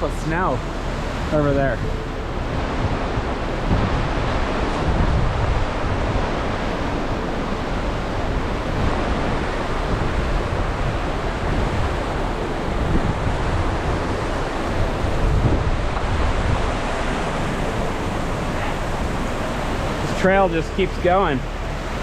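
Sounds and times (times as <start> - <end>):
waterfall rushing: 0.0 - 22.0
wind gusting on microphone: 0.0 - 22.0.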